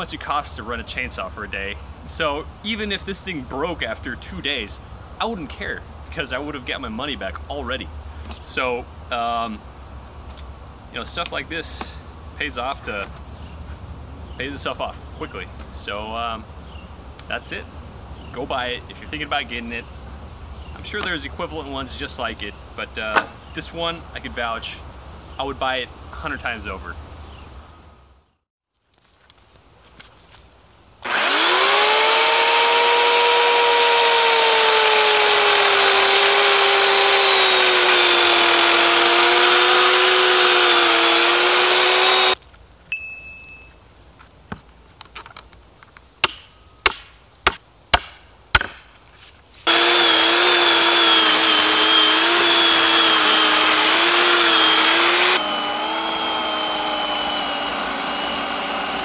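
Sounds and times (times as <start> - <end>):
electric chainsaw cutting log: 23.1 - 23.4, 31.0 - 42.4, 49.6 - 59.0
sharp knocks: 23.1 - 23.4, 46.2 - 48.9.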